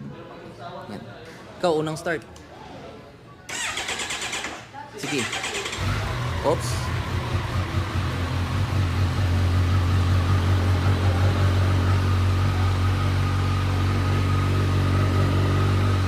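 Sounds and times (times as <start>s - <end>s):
motorcycle engine idling: 5.2s - 16.0s.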